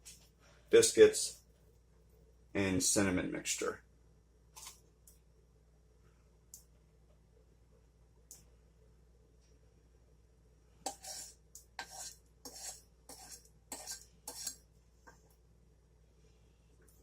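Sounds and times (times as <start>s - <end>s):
utensil scraping a saucepan: 10.8s - 14.6s.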